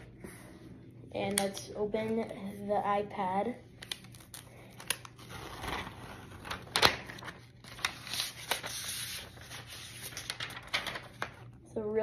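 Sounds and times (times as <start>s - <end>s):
packaging wrap crinkling: 3.8s - 11.5s.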